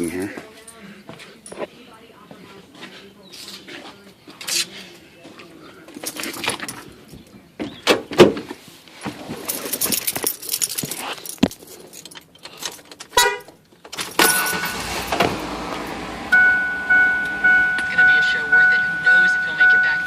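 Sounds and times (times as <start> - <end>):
keys jangling: 6.0 - 7.0, 9.4 - 13.2.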